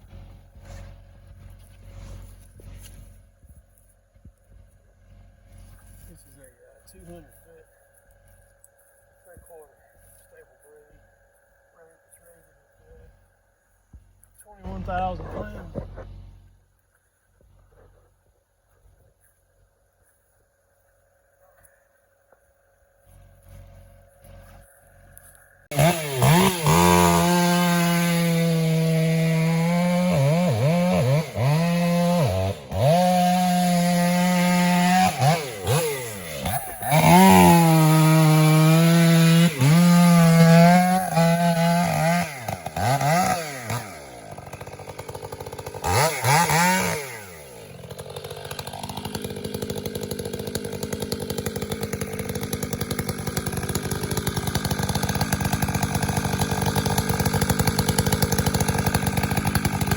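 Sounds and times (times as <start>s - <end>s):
chainsaw revving: 25.7s - 59.9s.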